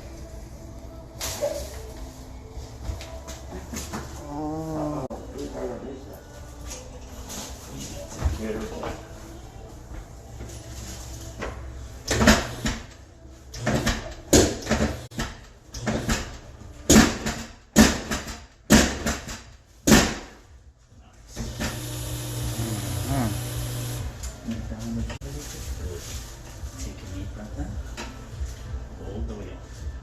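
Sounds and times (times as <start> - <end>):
low hum with hiss: 20.7 - 30.0.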